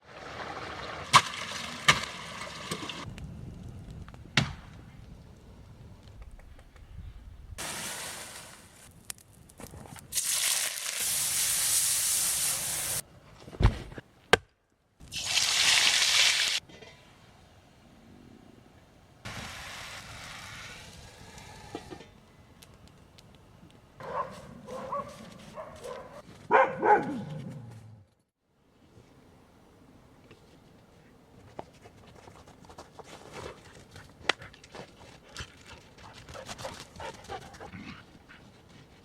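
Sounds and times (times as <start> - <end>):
wood being chopped: 4.4 - 4.6
steady hiss: 10.2 - 13.0, 19.2 - 22.2.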